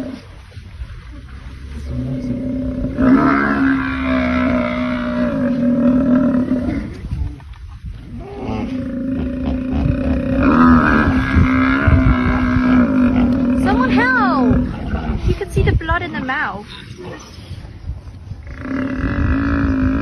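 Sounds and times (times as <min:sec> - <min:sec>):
animal bellowing: 0:01.8 - 0:07.0, 0:08.2 - 0:15.2, 0:18.4 - 0:20.0.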